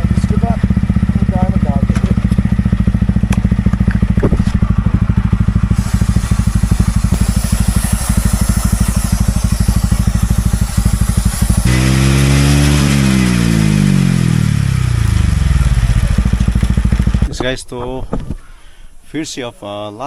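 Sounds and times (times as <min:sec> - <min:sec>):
motorcycle engine idling and revving: 0:00.0 - 0:17.6
hiss: 0:05.4 - 0:14.1.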